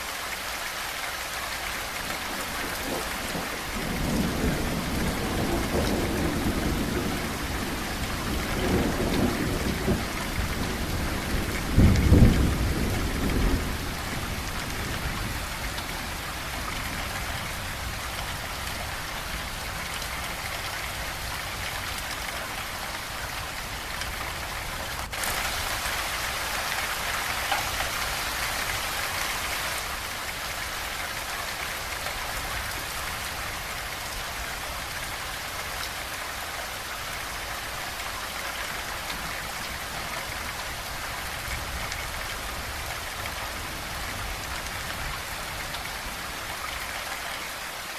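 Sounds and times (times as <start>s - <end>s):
steady rain: 0.0s - 47.9s
rolling thunder: 2.3s - 18.4s.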